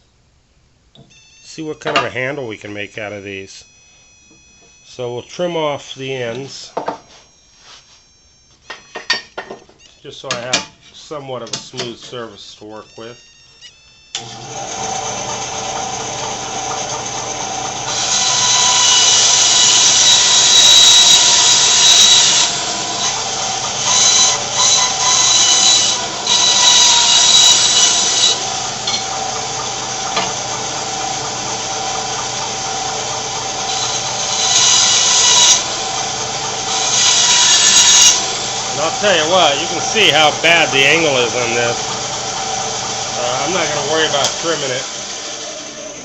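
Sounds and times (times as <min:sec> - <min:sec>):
bandsaw running: 0:14.2 - 0:46.0
saw blade cutting wood: 0:14.2 - 0:46.0.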